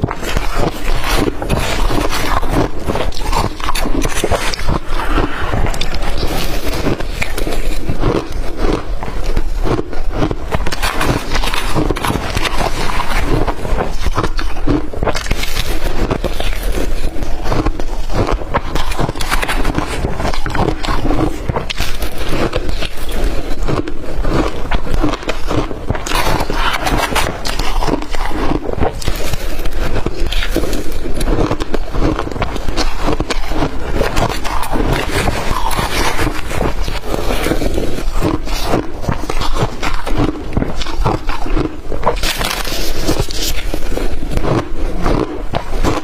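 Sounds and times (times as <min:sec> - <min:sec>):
crushed ice crunching: 0:00.0 - 0:46.0.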